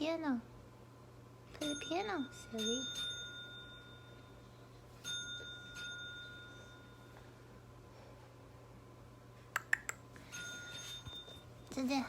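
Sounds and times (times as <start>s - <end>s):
bell ding: 1.6s - 4.3s, 5.0s - 7.1s, 10.3s - 11.4s.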